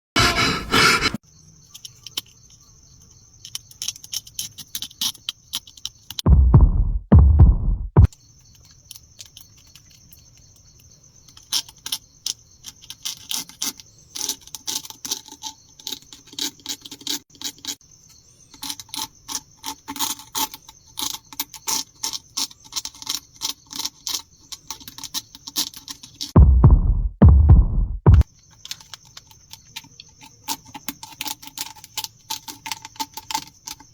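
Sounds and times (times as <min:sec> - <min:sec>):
dull bursts: 0:06.3 - 0:08.1, 0:26.4 - 0:28.2.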